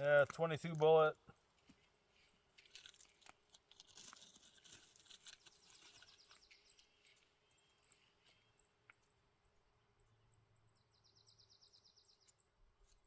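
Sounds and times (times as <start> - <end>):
faint crackling and rustling: 0.0 - 9.2.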